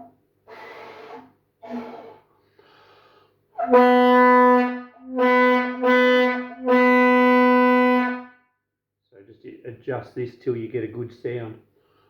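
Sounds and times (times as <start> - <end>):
fog horn blasts: 3.6 - 8.4.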